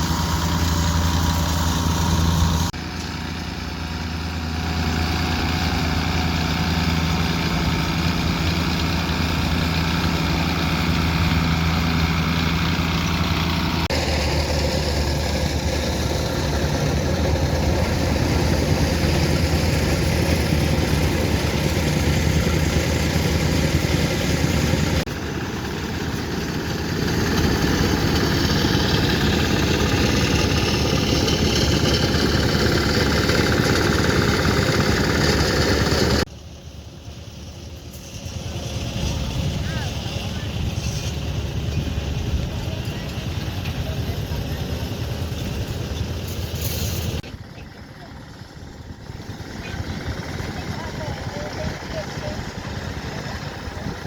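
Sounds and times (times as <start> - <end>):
heavy machine engine running: 0.0 - 54.0.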